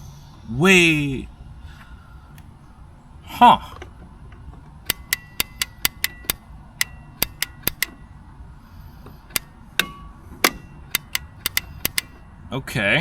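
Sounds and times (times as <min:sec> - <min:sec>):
starter solenoid clicking: 0:03.8 - 0:12.4.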